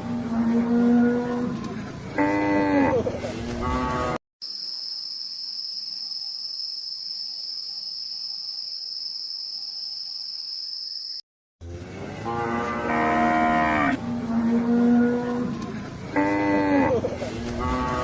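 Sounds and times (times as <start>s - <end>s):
crickets trilling: 4.4s - 11.2s.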